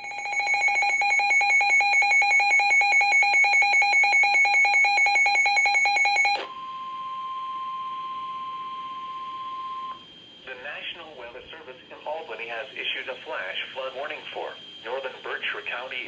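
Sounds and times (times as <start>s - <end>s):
electronic alarm pulsing rapidly: 0.0s - 6.5s
steady warning alarm tone: 0.0s - 16.0s.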